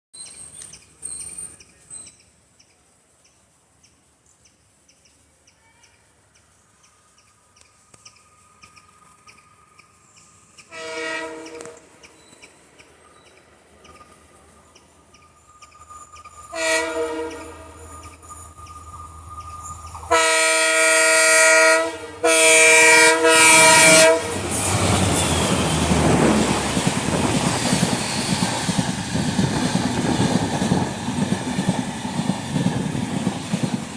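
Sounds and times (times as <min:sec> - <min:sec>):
train rumbling past: 0:06.2 - 0:33.9
locomotive horn: 0:10.7 - 0:12.0, 0:16.5 - 0:18.2, 0:20.0 - 0:24.6.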